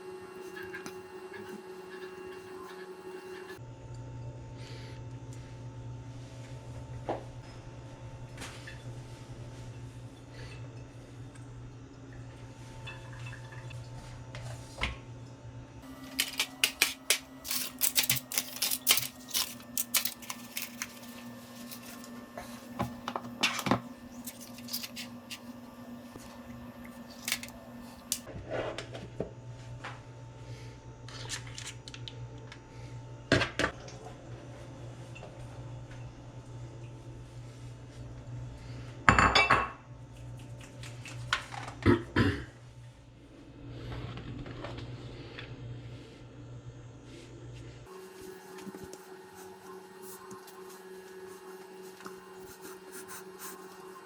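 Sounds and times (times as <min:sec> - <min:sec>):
utensils clinking against dishes: 0:16.0 - 0:22.0.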